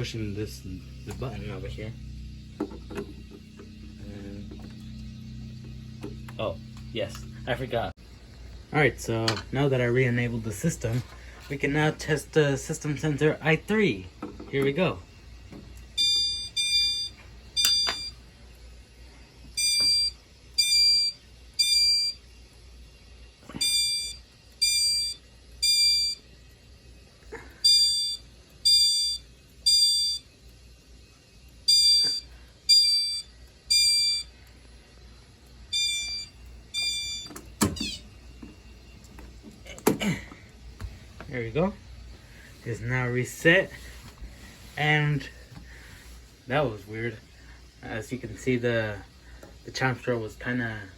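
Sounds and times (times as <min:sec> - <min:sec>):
fire alarm chime tones: 0:16.0 - 0:18.2, 0:19.6 - 0:22.2, 0:23.5 - 0:26.2, 0:27.6 - 0:30.3, 0:31.7 - 0:34.3, 0:35.7 - 0:38.1.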